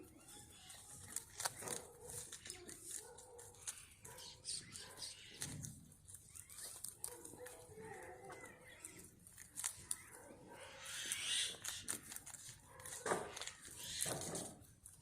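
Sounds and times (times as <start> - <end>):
rabbits chewing leaves: 0.0 - 15.0
leaf rustling: 5.2 - 15.0.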